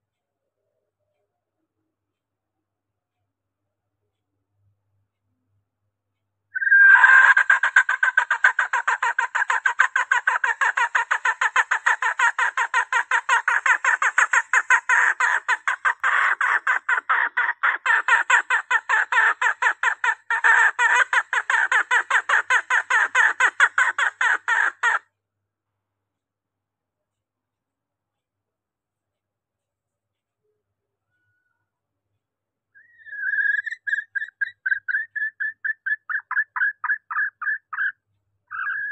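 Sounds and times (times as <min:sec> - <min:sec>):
junglefowl rapid clucking: 0:06.6 - 0:25.0, 0:33.0 - 0:38.9.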